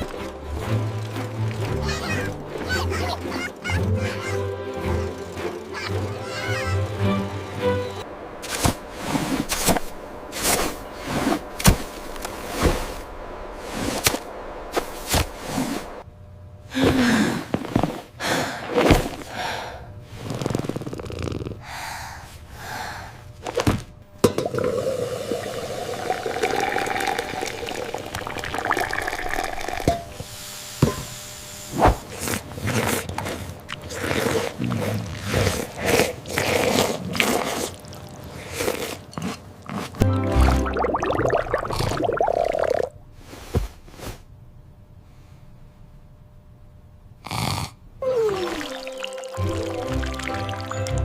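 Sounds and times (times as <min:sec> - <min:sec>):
pouring water: 0:24.4 - 0:29.9, 0:40.1 - 0:42.9, 0:48.3 - 0:51.0.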